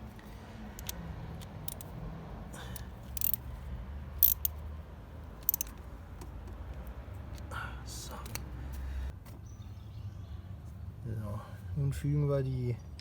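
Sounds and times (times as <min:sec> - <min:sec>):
metallic clicks of hand tools: 0:00.8 - 0:01.9, 0:02.8 - 0:03.4, 0:04.2 - 0:04.6, 0:05.4 - 0:05.8.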